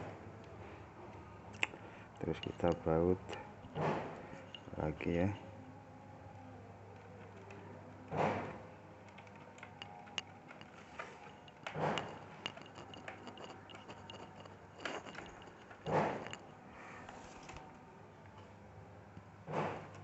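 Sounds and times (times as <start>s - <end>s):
parts rustling: 2.2s - 5.1s, 9.8s - 17.6s.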